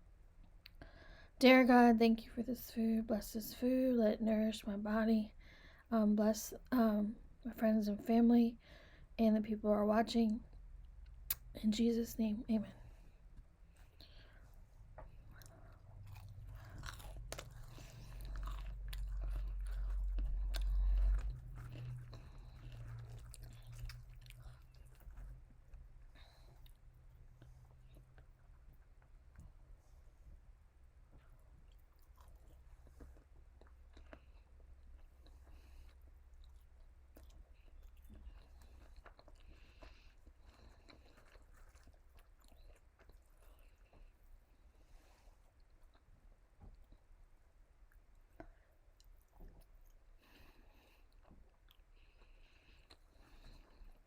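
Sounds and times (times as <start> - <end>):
crunching and chewing fried food: 13.2 - 29.6, 30.9 - 54.0.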